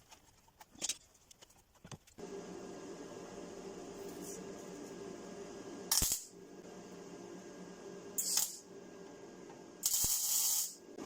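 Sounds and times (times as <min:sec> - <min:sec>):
low equipment hum: 0:02.2 - 0:10.0.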